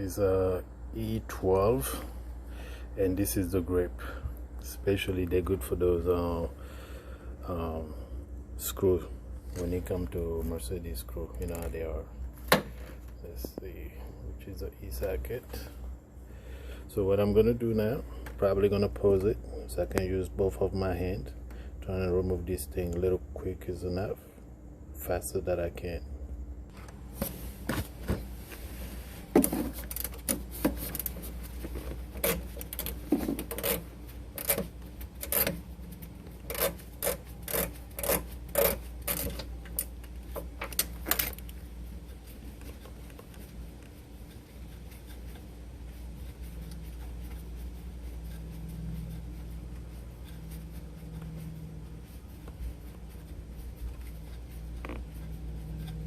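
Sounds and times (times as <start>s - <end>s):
low background rumble: 31.1s - 56.0s.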